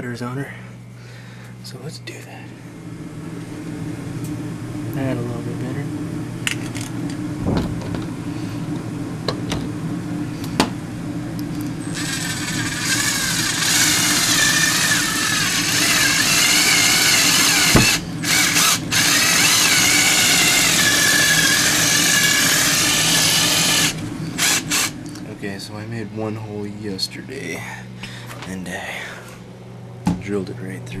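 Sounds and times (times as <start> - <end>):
electric drill with hole saw cutting: 11.9 - 25.0.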